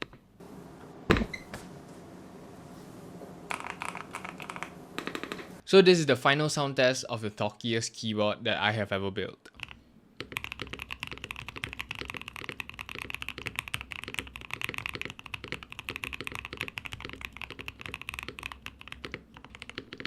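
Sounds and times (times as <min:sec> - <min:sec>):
fast mechanical keyboard typing: 0:03.5 - 0:05.5, 0:09.6 - 0:20.0.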